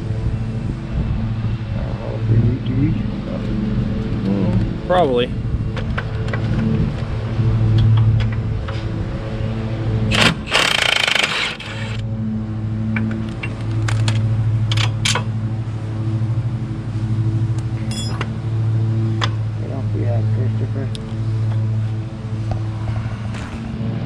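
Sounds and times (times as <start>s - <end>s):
lawn mower engine running: 6.4s - 18.9s.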